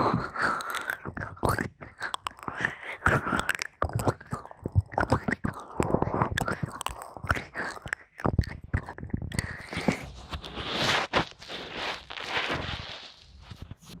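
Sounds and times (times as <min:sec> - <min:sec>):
person whispering close up: 0:00.0 - 0:10.6
small crisp clicks and crackles: 0:00.0 - 0:14.0.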